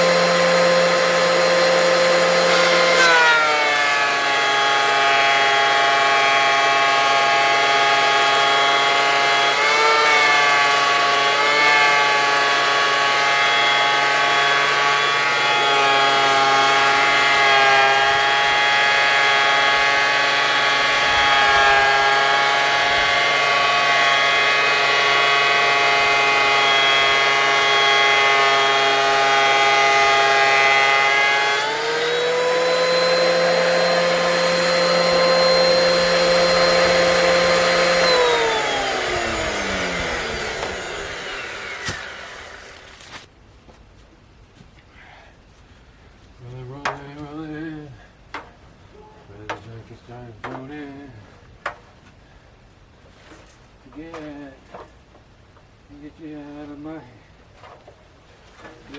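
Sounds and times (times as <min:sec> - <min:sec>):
machine motor running: 0:31.6 - 0:42.9.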